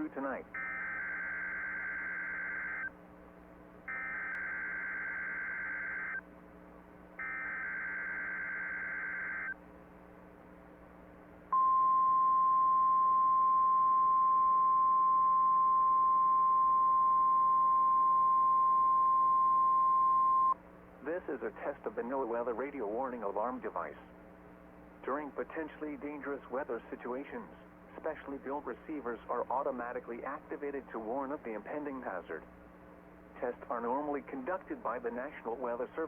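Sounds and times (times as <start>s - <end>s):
steady warning alarm tone: 0.5s - 2.9s, 3.9s - 6.2s, 7.2s - 9.6s.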